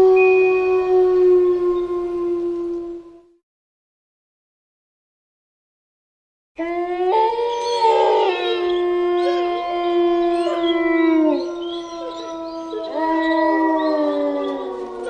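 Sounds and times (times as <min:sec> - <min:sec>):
wolves howling: 0:00.0 - 0:03.3, 0:06.6 - 0:15.0.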